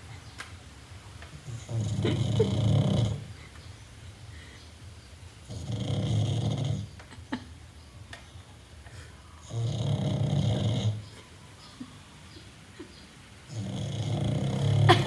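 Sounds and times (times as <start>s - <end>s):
dog snoring: 1.4s - 3.3s, 5.4s - 6.9s, 9.4s - 11.1s, 13.5s - 15.0s.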